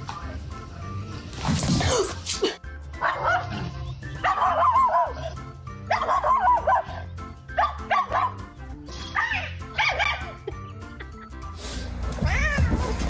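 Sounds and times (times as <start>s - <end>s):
dog barking: 3.0s - 8.4s, 9.2s - 10.3s.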